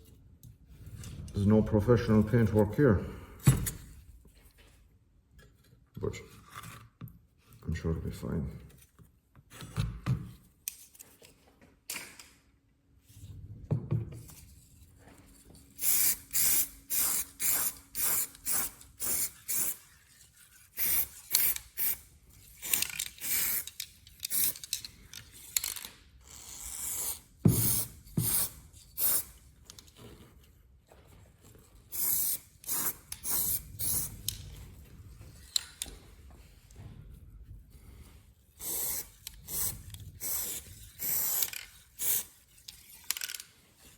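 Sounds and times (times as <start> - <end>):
spray paint can hissing: 15.8 - 19.8, 20.8 - 22.0, 26.8 - 29.3, 31.9 - 34.2, 38.6 - 42.4.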